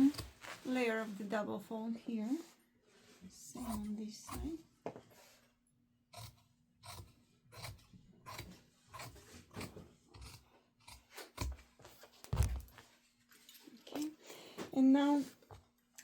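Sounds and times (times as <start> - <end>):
scissors snipping fabric: 0.0 - 0.6, 3.6 - 4.6, 6.2 - 12.7.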